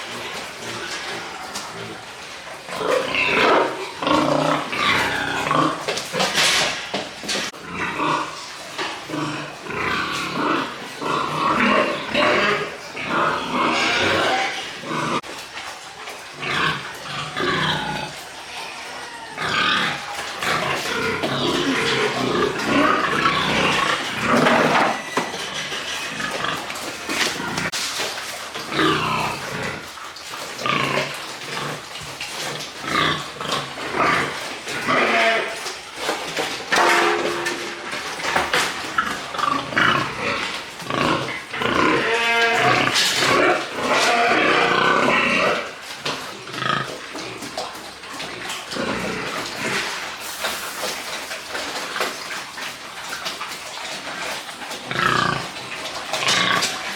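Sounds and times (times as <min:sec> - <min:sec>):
piglets calling: 0:09.6 - 0:27.8, 0:30.6 - 0:36.1, 0:38.8 - 0:45.8.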